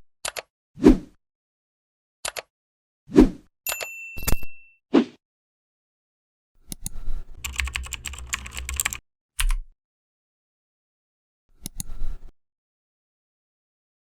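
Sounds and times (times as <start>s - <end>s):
keyboard key clicks: 7.4s - 9.6s.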